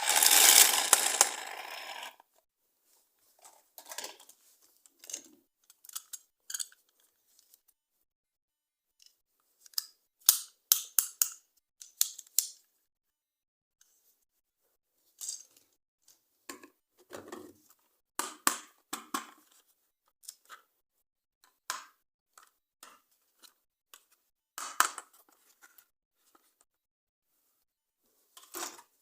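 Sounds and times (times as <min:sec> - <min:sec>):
packaging rustling: 0:00.0 - 0:02.1
plastic toys clicking and tapping: 0:00.0 - 0:02.1, 0:04.9 - 0:07.5, 0:09.0 - 0:12.6.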